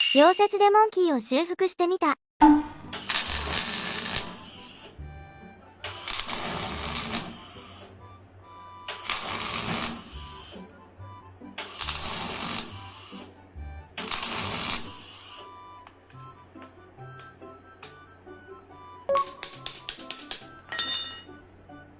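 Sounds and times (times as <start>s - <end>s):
background music: 2.4s - 21.9s
arc welding crackling: 3.0s - 5.0s, 5.9s - 8.0s, 8.9s - 10.7s, 11.6s - 13.4s, 14.0s - 15.6s.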